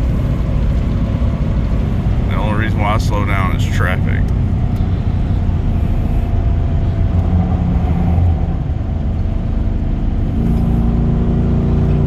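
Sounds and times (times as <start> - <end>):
truck engine revving high: 0.0 - 12.0.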